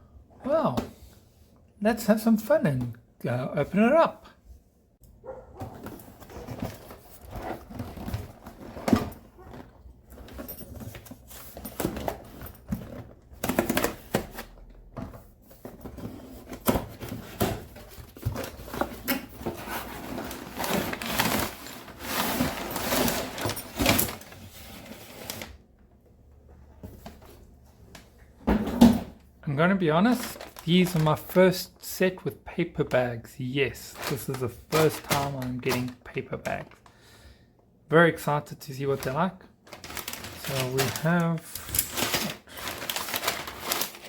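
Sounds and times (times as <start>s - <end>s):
cardboard tearing and rustling: 5.6s - 14.6s, 15.8s - 25.5s, 30.1s - 31.2s, 33.9s - 36.0s, 39.7s - 44.0s.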